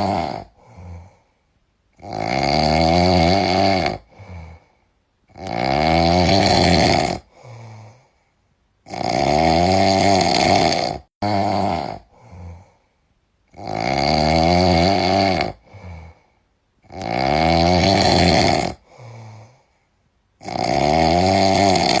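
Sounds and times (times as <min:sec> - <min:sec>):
soft breath: 0:00.0 - 0:01.6, 0:04.0 - 0:05.0, 0:07.3 - 0:08.5, 0:12.0 - 0:13.1, 0:15.6 - 0:16.5, 0:18.8 - 0:20.1
person snoring: 0:00.0 - 0:08.2, 0:08.8 - 0:12.9, 0:13.5 - 0:19.8, 0:20.4 - 0:22.0.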